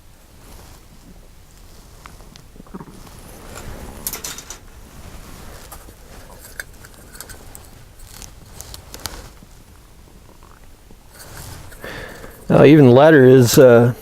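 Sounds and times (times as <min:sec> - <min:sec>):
plastic sprues clicking and clacking: 0:04.0 - 0:04.7, 0:05.6 - 0:09.2.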